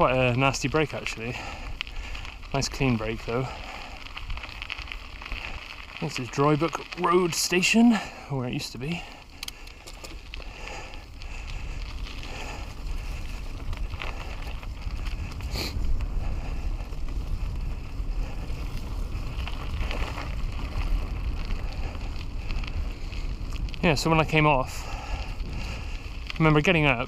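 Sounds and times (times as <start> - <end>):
bike clicks and rattles: 0.0 - 27.0
tyres rumbling on trail: 0.0 - 27.0
wind on microphone: 10.4 - 27.0.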